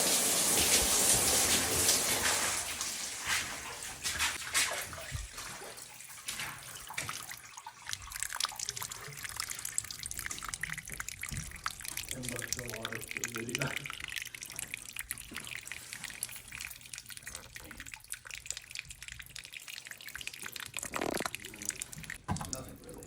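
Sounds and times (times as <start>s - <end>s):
water spraying and hissing: 0.0s - 6.6s
water dripping: 0.0s - 23.0s.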